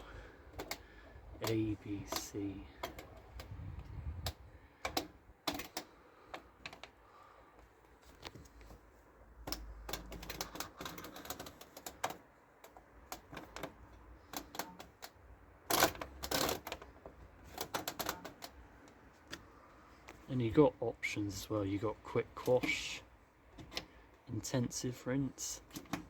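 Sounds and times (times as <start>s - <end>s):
washing machine dial clicking: 0.0s - 7.0s, 9.4s - 19.4s, 25.6s - 26.0s.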